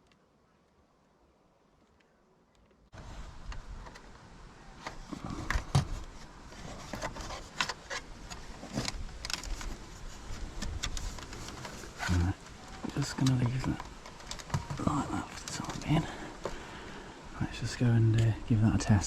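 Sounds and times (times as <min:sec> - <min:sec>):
steady background hiss: 0:00.0 - 0:19.0
handling clicks and knocks: 0:04.8 - 0:16.6.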